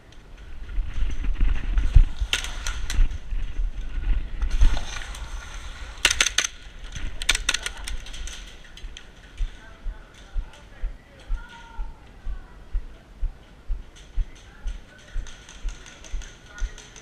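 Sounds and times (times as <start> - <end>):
wind rumble on microphone: 0.2 - 10.0.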